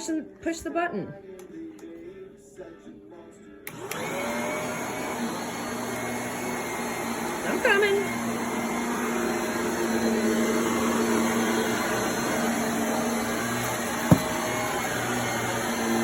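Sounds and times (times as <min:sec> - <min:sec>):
vacuum cleaner droning: 0:03.7 - 0:16.0
short knock: 0:14.1 - 0:14.4.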